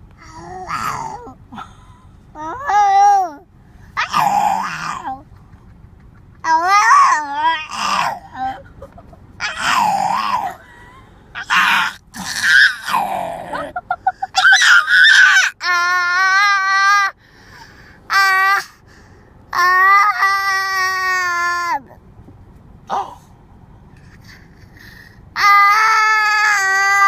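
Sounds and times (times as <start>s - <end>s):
child shrieking and growling: 0.2s - 1.4s, 4.0s - 5.2s, 6.5s - 8.6s, 9.4s - 10.6s, 11.4s - 13.7s, 14.4s - 17.2s, 25.4s - 27.0s
child yelping: 0.2s - 1.4s, 4.0s - 5.2s, 6.4s - 8.6s, 9.4s - 10.6s, 11.4s - 13.7s, 14.3s - 17.2s, 18.1s - 18.8s, 19.5s - 21.9s, 25.4s - 27.0s
child high-pitched squeal: 14.4s - 17.1s.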